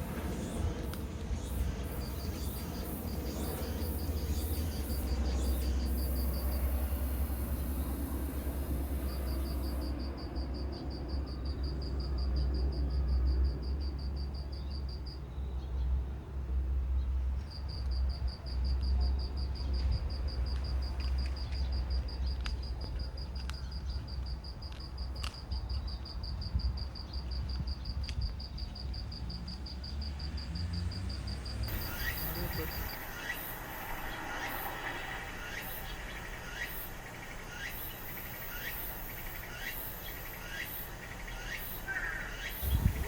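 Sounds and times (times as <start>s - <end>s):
steady low rumble: 0.0s - 14.0s, 31.6s - 43.0s
cricket chirping: 0.0s - 15.9s, 16.9s - 43.0s.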